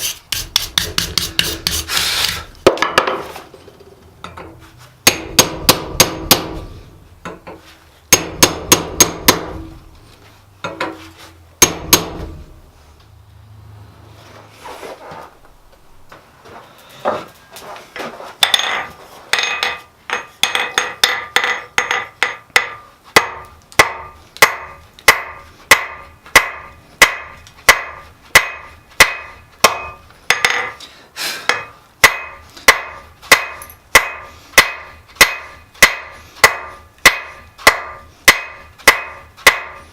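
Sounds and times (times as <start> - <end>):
hammer striking steel on anvil: 4.2 - 9.8, 10.6 - 11.0, 11.6 - 12.5, 18.4 - 30.8, 31.5 - 39.9.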